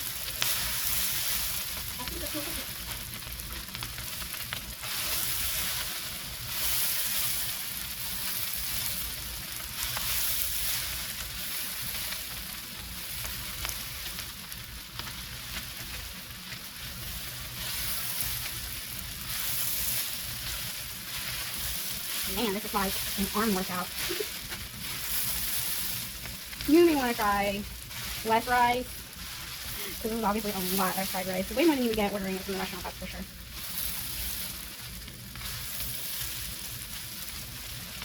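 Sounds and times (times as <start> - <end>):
rice sizzling in a pan: 0.0 - 38.0.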